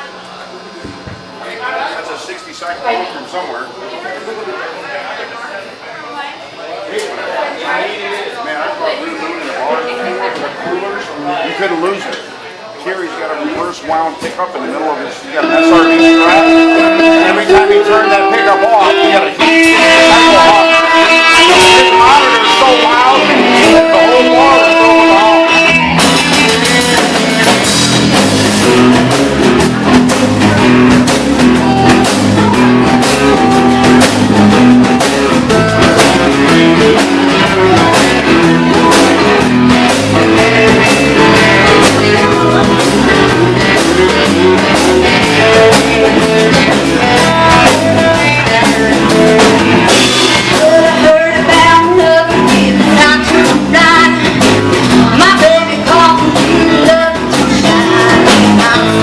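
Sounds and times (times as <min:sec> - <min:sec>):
drum kit beat: 0:15.4 - 0:59.0
rock music with guitar: 0:15.4 - 0:59.0.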